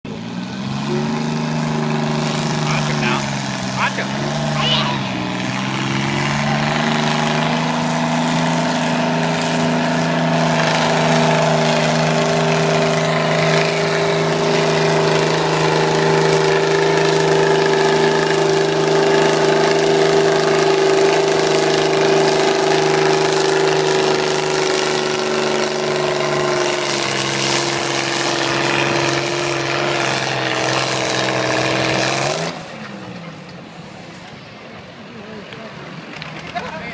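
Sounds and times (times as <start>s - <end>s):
tractor engine at full throttle: 0.0s - 36.9s.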